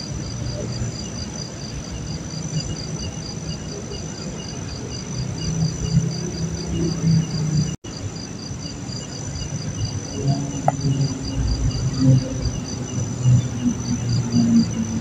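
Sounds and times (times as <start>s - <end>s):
crickets chirping: 0.0s - 15.0s
high insect trill: 0.0s - 15.0s
low rumbling noise: 8.8s - 15.0s.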